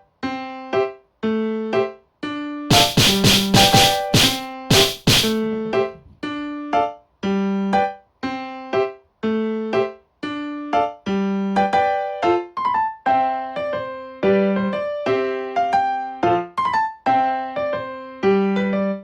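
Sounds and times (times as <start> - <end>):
bouncy piano tune over a beat: 2.7 - 5.4.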